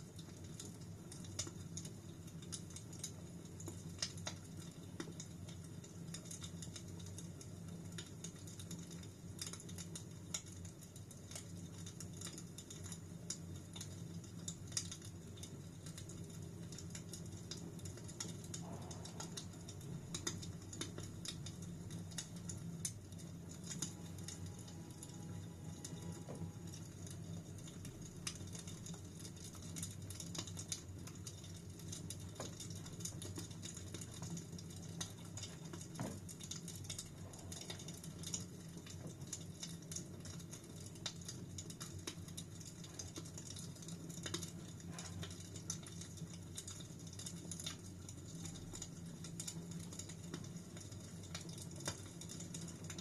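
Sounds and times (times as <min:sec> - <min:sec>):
wood fire crackling: 0:00.0 - 0:53.0
low rumble: 0:18.6 - 0:20.6.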